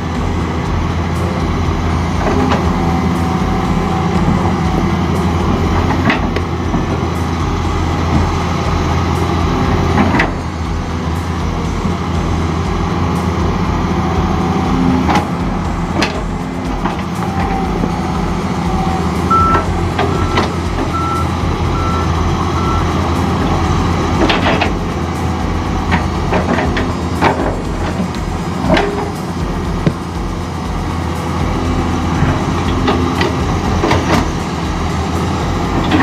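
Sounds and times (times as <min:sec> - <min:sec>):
excavator diesel engine running: 0:00.0 - 0:36.0
backup alarm beeping: 0:19.3 - 0:22.9.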